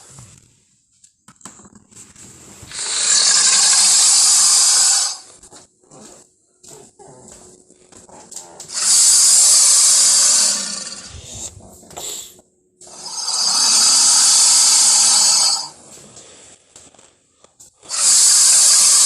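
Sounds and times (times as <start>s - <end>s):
creature harsh hisses: 2.7s - 5.2s, 8.7s - 12.3s, 12.9s - 15.8s, 17.9s - 19.0s.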